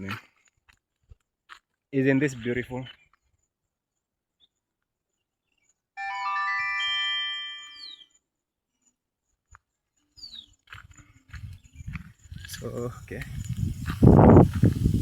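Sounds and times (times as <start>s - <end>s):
electronic bell-like chime: 6.0s - 8.0s.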